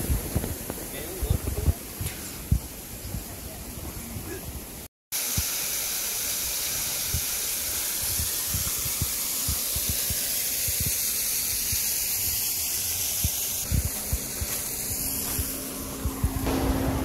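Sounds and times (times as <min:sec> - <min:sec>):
low thumps: 0:13.2 - 0:17.0.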